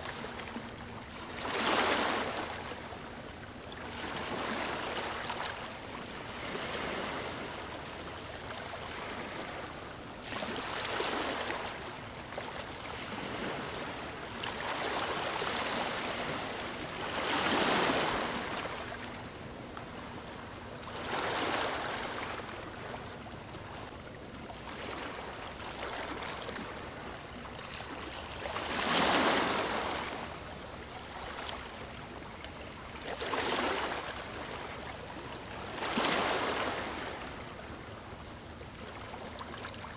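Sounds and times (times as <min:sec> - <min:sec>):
ocean waves breaking: 0:12.9 - 0:19.2, 0:27.7 - 0:31.7, 0:35.7 - 0:37.5.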